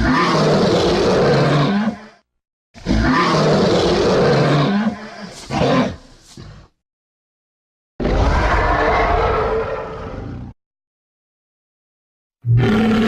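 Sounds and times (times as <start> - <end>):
monster roar: 0.0 - 2.2, 8.0 - 10.6, 12.5 - 13.0.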